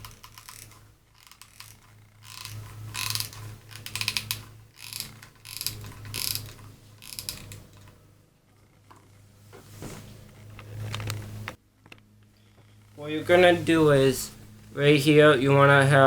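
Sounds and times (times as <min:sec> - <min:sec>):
glue gun ratcheting click: 0:00.0 - 0:07.9
steady low hum: 0:00.0 - 0:16.0.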